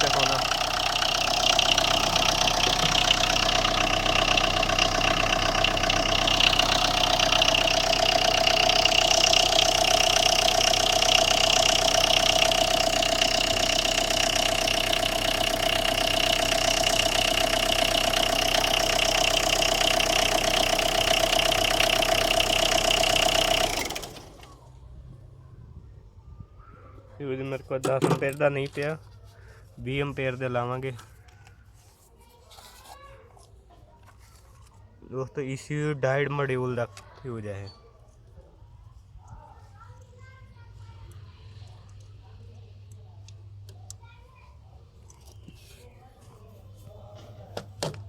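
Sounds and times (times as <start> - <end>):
diesel engine idling with knock: 0.0 - 24.7, 47.1 - 48.0.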